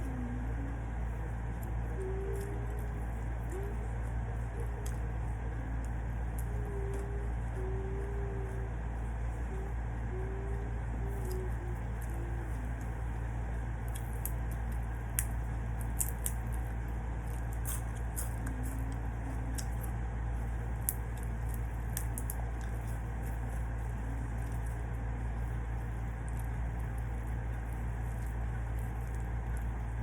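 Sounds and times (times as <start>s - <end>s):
steady low hum: 0.0s - 30.0s
chewing crunches: 13.6s - 30.0s.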